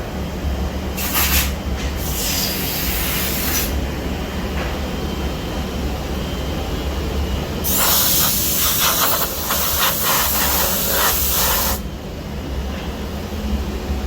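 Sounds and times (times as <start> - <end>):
loud hiss: 7.7 - 11.8.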